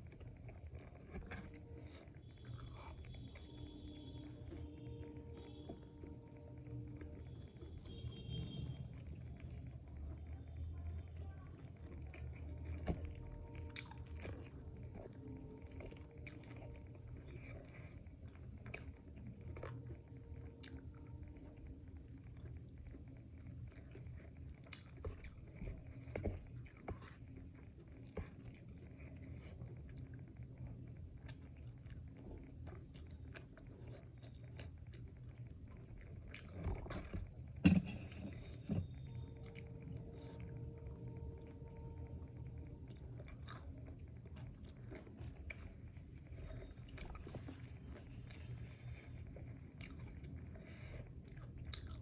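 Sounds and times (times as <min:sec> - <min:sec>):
low steady hum: 0:00.0 - 0:52.0
person chewing and biting: 0:51.3 - 0:52.0.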